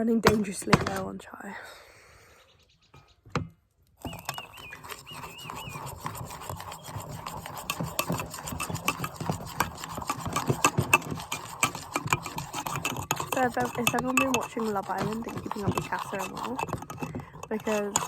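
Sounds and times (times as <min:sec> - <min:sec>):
spoon scraping a container: 0:04.0 - 0:18.0.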